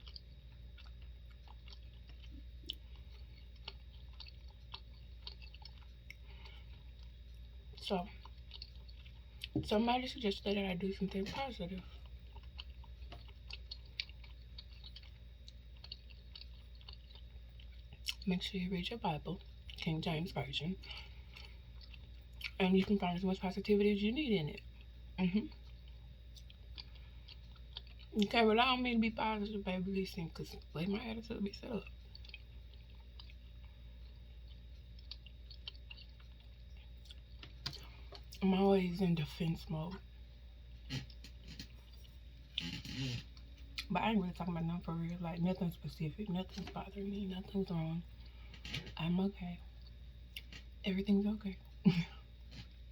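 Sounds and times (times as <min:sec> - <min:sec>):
mouth chewing food: 0:00.0 - 0:09.7, 0:11.1 - 0:18.3, 0:20.8 - 0:22.6, 0:24.6 - 0:28.3, 0:31.8 - 0:38.4, 0:40.7 - 0:43.9
low steady hum: 0:00.0 - 0:52.9.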